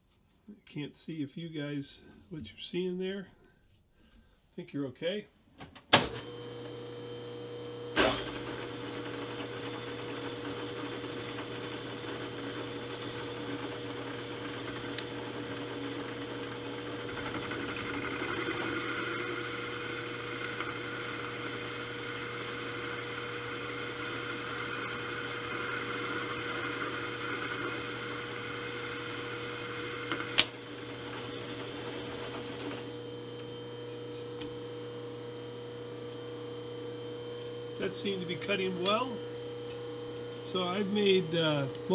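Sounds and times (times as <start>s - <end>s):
milling machine humming: 6.2s - 41.9s.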